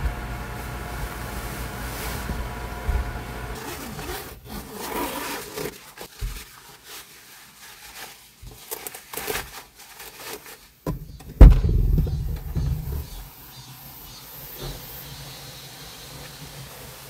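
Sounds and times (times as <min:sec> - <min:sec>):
rubbing and scraping: 0:00.6 - 0:13.3
heavy low thump: 0:11.3 - 0:13.3.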